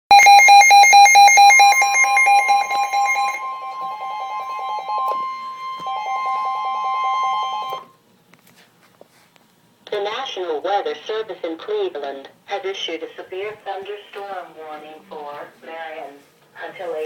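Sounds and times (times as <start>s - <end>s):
steady high alarm tone: 0.1s - 8.0s.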